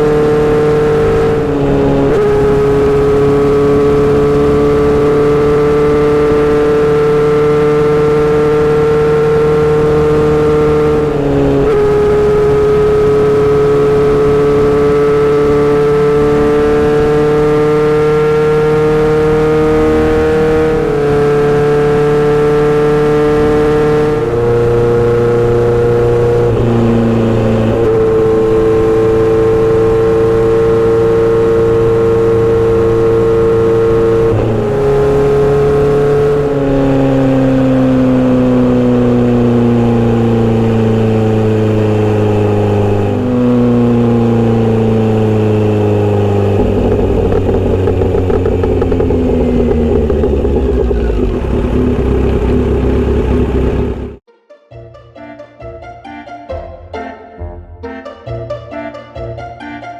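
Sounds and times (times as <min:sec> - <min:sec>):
motorcycle engine and exhaust: 0:00.0 - 0:54.3.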